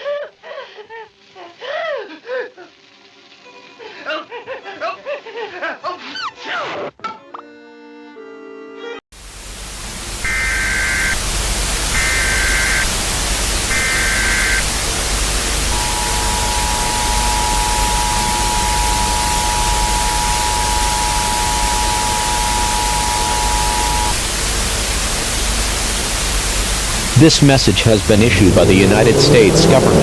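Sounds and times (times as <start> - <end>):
static hiss: 0.7 - 4.5, 9.2 - 30.0
digital data bursts: 9.6 - 30.0
two-tone attention signal: 10.2 - 11.2, 11.9 - 12.9, 13.7 - 14.8, 15.6 - 24.2.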